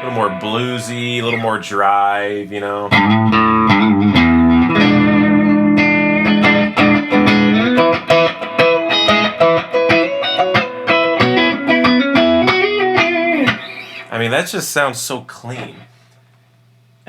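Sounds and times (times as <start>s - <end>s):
electric guitar chord and picked notes: 0.0s - 2.2s, 2.9s - 14.1s.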